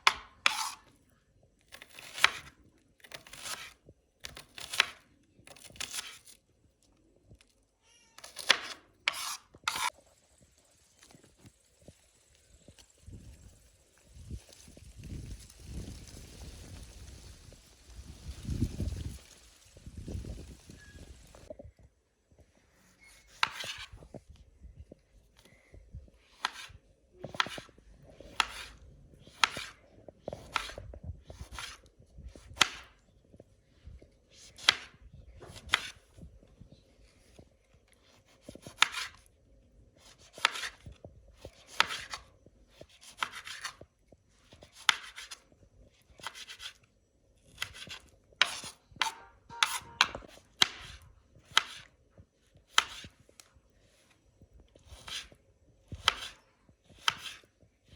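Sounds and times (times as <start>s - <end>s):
knife chopping on cutting board: 4.3s - 5.0s, 8.3s - 9.9s, 47.8s - 51.0s, 57.0s - 57.4s.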